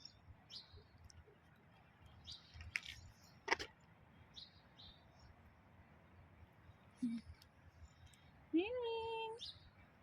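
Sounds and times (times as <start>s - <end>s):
small birds chirping: 0.0s - 10.0s.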